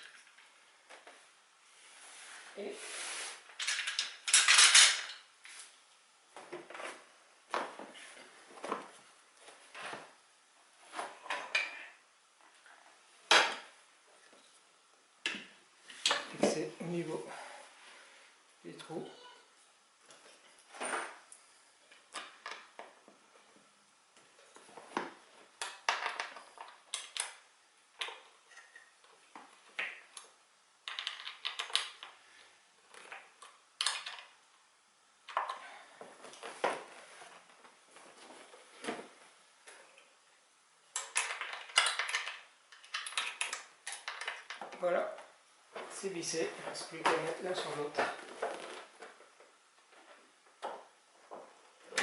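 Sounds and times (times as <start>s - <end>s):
chair parts knocking and clattering: 3.6s - 5.2s, 13.3s - 13.8s, 41.0s - 52.0s.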